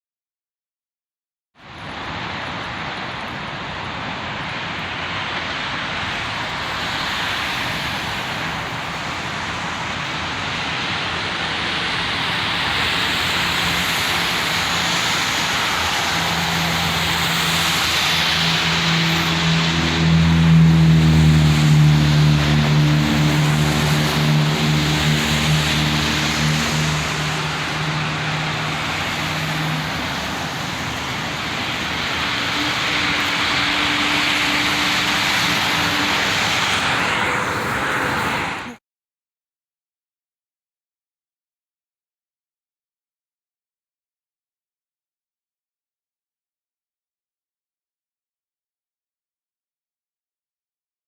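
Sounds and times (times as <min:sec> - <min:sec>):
road traffic rushing: 0:01.6 - 0:38.8
vehicle engine droning: 0:04.6 - 0:38.8.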